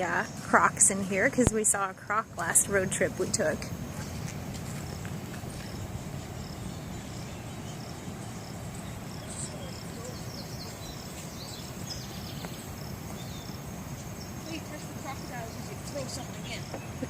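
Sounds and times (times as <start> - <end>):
high bird chirps: 6.4 - 17.0.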